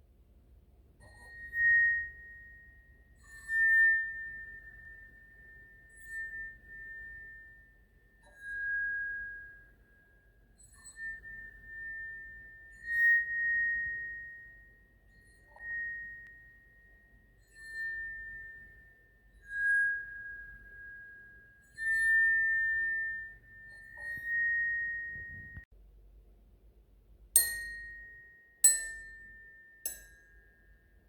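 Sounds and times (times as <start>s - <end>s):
glass ringing when struck: 1.0s - 9.8s, 10.7s - 14.8s, 15.4s - 25.7s, 27.4s - 30.9s.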